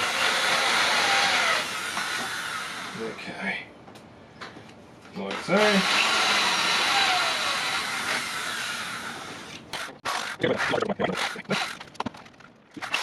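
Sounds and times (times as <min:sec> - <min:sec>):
electric drill boring into wood: 0:00.0 - 0:03.2, 0:05.3 - 0:10.4
knocks and clatters: 0:11.6 - 0:12.9.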